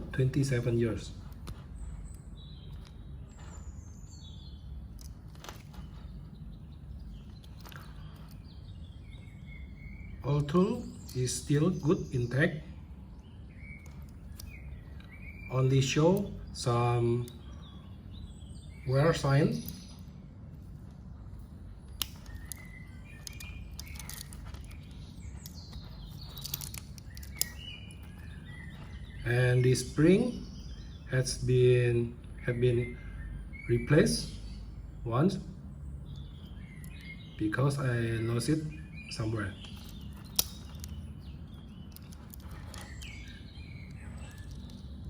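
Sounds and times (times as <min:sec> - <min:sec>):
bird chirps: 0:00.0 - 0:45.0
low steady rumble: 0:00.0 - 0:45.0
sharp clicks: 0:21.9 - 0:28.9, 0:39.6 - 0:45.0
pocket knife tools clicking: 0:39.7 - 0:41.0.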